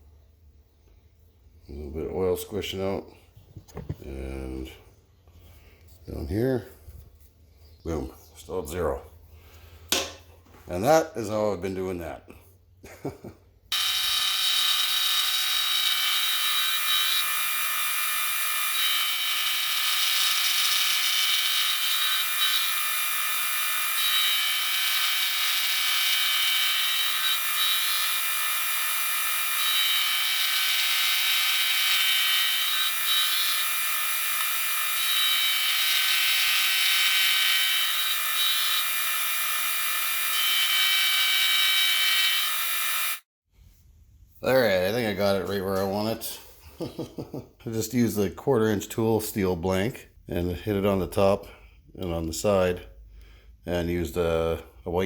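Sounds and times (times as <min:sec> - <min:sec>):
machine tool whining: 0:13.7 - 0:43.3.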